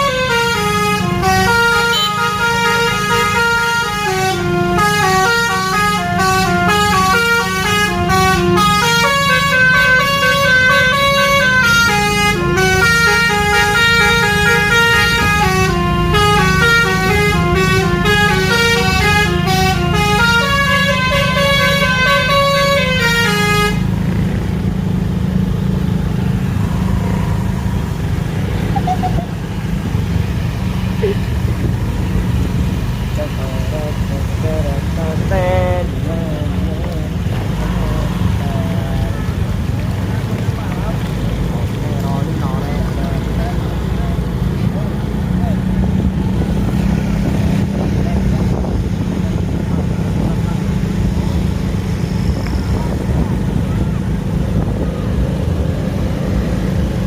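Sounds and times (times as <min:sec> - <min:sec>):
multi-tone bus horn tune: 0:00.0 - 0:24.5, 0:33.1 - 0:40.3
bus engine humming: 0:00.0 - 0:57.0.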